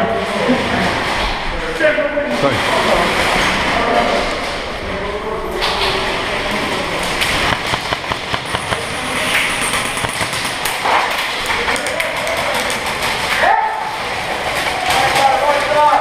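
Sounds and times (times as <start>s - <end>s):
airsoft guns firing: 7.3s - 11.4s
knocks: 7.4s - 11.0s
distant shouts: 11.6s - 15.8s.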